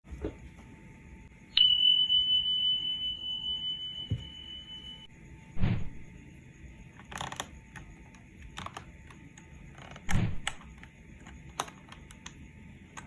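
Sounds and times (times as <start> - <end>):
heavier thump: 5.6 - 6.1.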